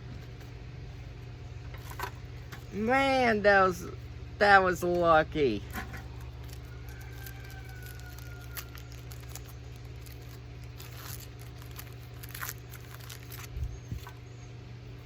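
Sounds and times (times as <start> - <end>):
steady low hum: 0.0 - 15.0
cards rustling and crinkling: 5.7 - 14.2
foil wrapper crinkling: 5.7 - 14.2.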